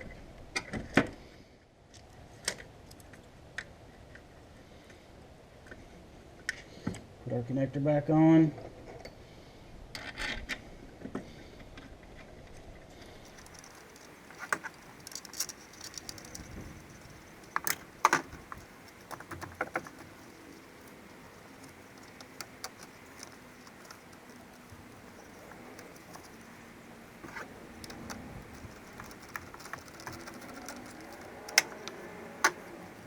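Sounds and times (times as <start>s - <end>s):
hand tools and metal parts clinking: 13.3s - 33.0s.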